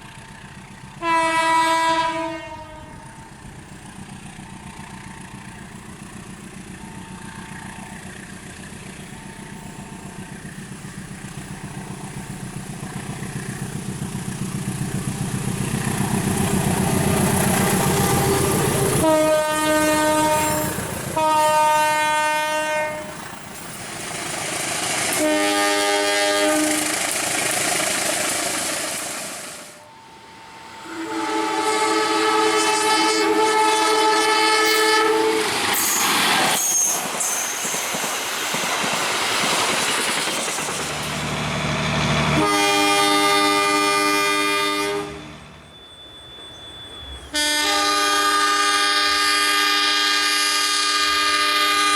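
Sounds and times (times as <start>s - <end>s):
train rumble: 0.0s - 51.9s
locomotive horn chord: 1.0s - 3.3s, 17.8s - 23.2s, 25.1s - 26.9s, 29.7s - 35.8s, 42.3s - 45.6s, 47.3s - 51.9s.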